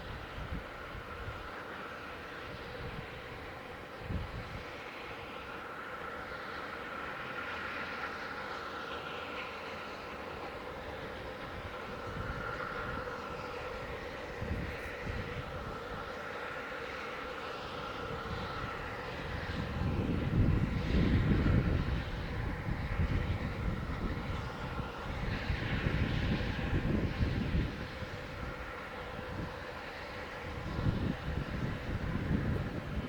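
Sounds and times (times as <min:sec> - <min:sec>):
steam locomotive rumbling past: 0:00.0 - 0:33.0.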